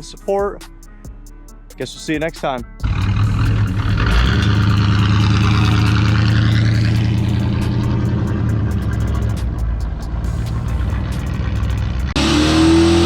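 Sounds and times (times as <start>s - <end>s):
vehicle engine droning: 2.8s - 13.0s.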